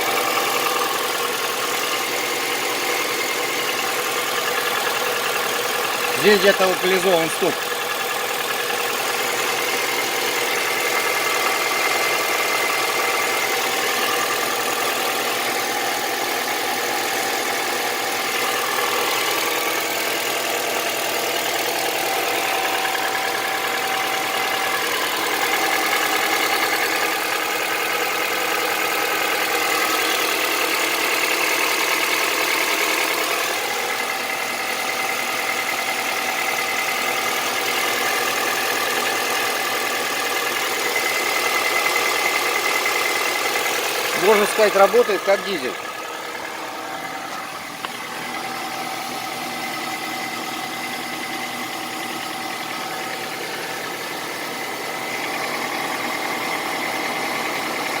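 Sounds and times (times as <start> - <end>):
car engine idling with knock: 0.0 - 58.0.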